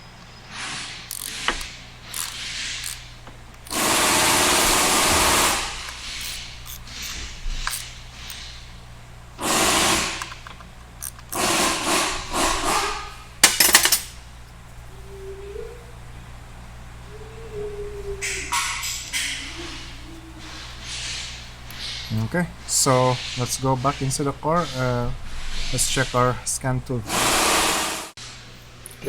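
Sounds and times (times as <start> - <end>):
handheld power tool running: 1.1 - 8.5, 9.4 - 12.8
clicks and knocks of metal tools: 13.4 - 14.2.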